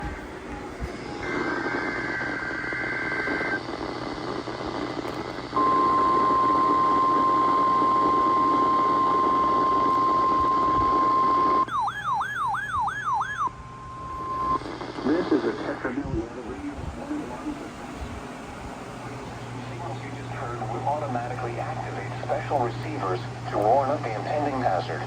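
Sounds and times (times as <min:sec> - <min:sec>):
loud steady warning alarm tone: 0:00.0 - 0:04.5, 0:05.4 - 0:15.0
radio hiss: 0:00.0 - 0:11.6, 0:13.7 - 0:25.0
siren-like warbling tone: 0:11.6 - 0:14.6.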